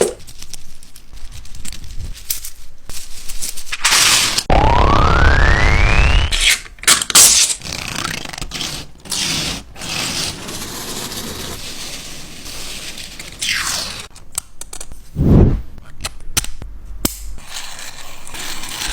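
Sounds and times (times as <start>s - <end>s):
rising whistle-like tone: 4.5s - 6.4s.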